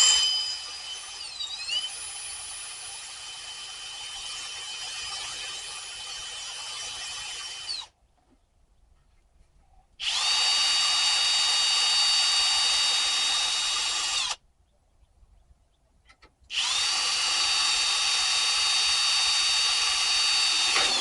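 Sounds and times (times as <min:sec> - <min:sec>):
power drill spinning: 0:00.0 - 0:07.9, 0:10.0 - 0:14.4, 0:16.5 - 0:21.0.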